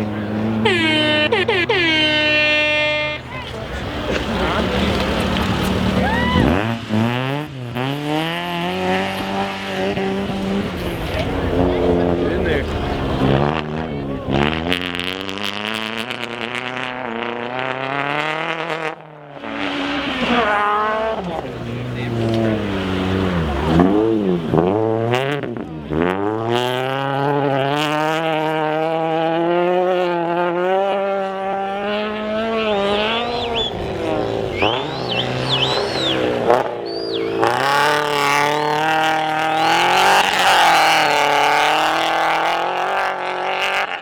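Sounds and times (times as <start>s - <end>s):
rally car engine revving: 0.0s - 44.0s
short high squeals: 33.0s - 37.5s.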